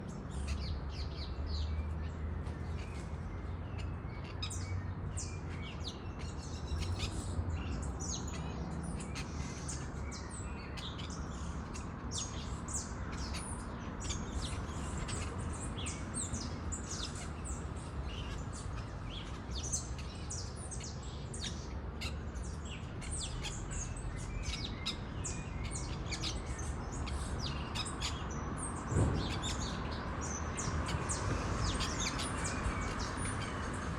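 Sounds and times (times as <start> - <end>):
parakeets chirping: 29.0 - 33.9.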